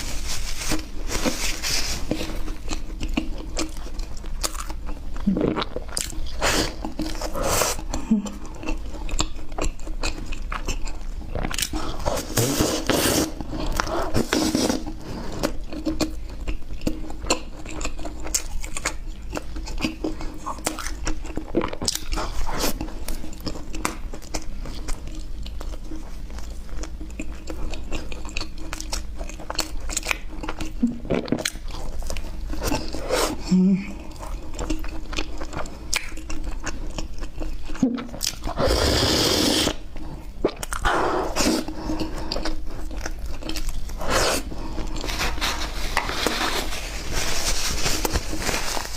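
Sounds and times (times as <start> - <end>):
low steady hum: 0.0 - 38.9
person biting and chewing: 0.7 - 46.8.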